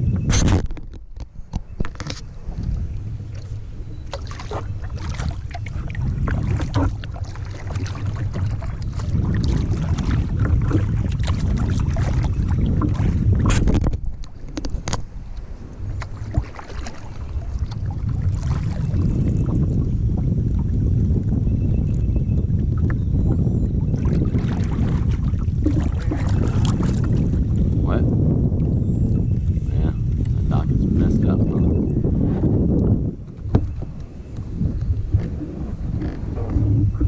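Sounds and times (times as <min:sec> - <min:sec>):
wind buffeting microphone: 0:00.0 - 0:37.0
water splashing against kayak: 0:00.1 - 0:37.0.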